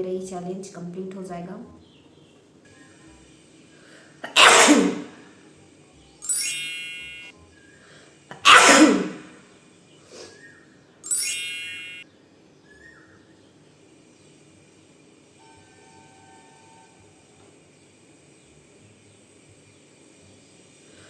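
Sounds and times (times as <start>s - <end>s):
woman sneezing: 4.2s - 5.2s, 8.3s - 9.4s
bright chime: 6.2s - 7.3s, 11.0s - 12.0s.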